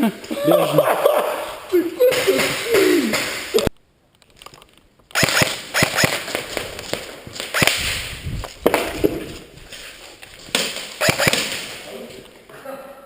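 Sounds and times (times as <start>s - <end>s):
airsoft gun shots: 5.1s - 6.4s, 7.5s - 9.0s, 10.6s - 11.8s.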